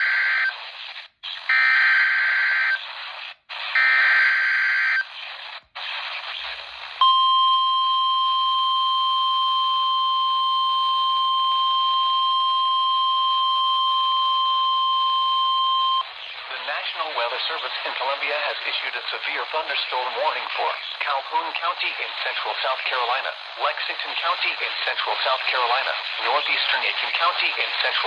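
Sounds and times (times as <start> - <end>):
radio hiss: 0.0 - 1.6, 2.2 - 7.0, 16.0 - 28.0.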